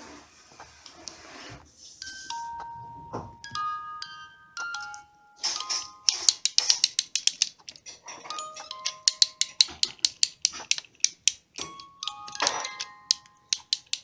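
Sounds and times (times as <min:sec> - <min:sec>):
ticking percussion beat: 0:05.6 - 0:07.6, 0:08.4 - 0:14.0.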